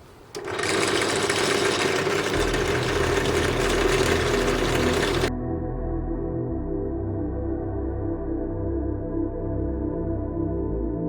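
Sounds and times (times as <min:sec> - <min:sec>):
power drill hole saw grinding: 0:00.3 - 0:05.3.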